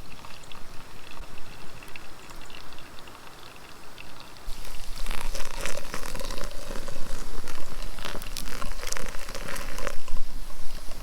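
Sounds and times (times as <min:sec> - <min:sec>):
small crackles and clicks: 0:00.0 - 0:11.0
crinkling and rustling: 0:04.5 - 0:11.0.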